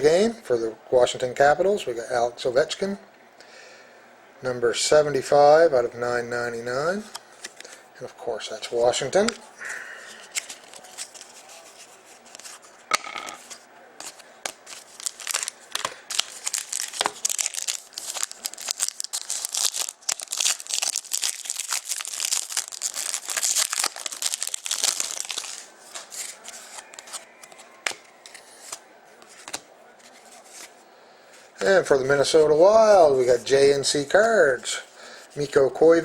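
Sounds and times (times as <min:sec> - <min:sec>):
cards clicking and rustling: 0:10.1 - 0:30.7
wrapper being torn and crinkled: 0:14.0 - 0:27.3.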